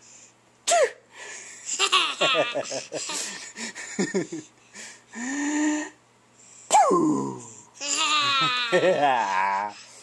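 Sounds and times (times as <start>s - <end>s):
fake sneeze: 0.7s - 1.0s, 6.7s - 7.2s
baby laughing: 1.7s - 3.5s, 7.8s - 9.8s.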